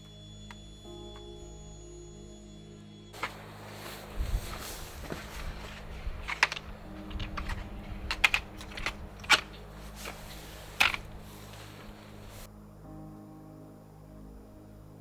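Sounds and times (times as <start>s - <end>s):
sharp clicks and clacks: 4.6s - 12.5s.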